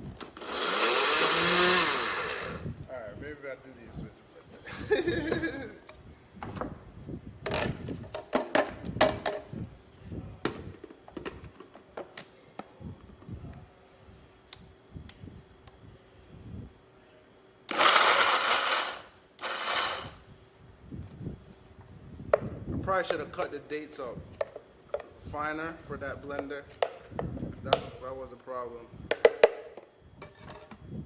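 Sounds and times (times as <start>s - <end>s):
blender grinding thick mix: 0.4s - 2.6s, 17.7s - 20.2s.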